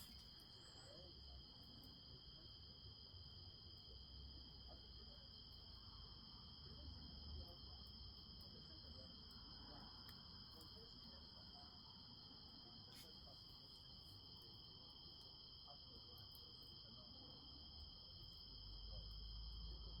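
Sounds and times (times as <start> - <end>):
campfire crackling: 0.0 - 0.5
crickets chirping: 0.0 - 20.0.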